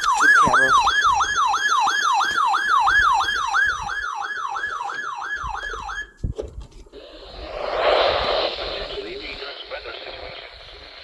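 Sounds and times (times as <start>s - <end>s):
electronic siren sweeping: 0.0s - 6.1s.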